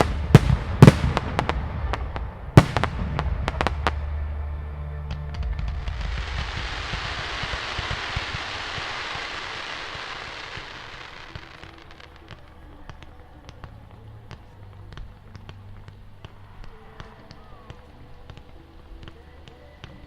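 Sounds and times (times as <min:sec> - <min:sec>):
firework crackling hiss: 0:05.1 - 0:20.0
firework pops and clicks: 0:05.1 - 0:20.0.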